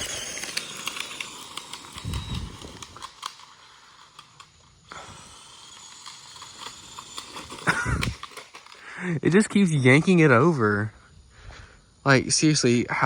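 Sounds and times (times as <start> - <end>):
small clicks: 0.0 - 8.9.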